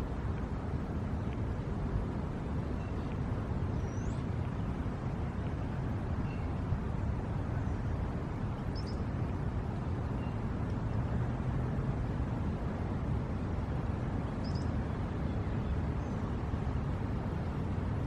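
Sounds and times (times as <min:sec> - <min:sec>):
faint bird chirps: 0:08.7 - 0:09.1, 0:14.4 - 0:14.7.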